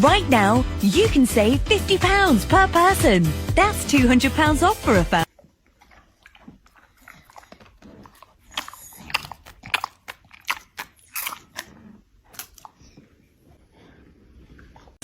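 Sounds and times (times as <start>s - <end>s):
dog chewing crunchy food: 5.2s - 15.0s.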